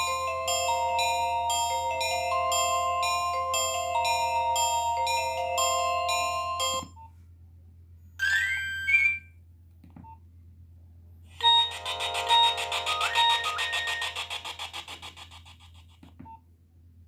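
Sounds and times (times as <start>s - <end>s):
mobile phone ringtone: 0.0s - 6.9s, 8.2s - 9.2s, 11.4s - 14.3s.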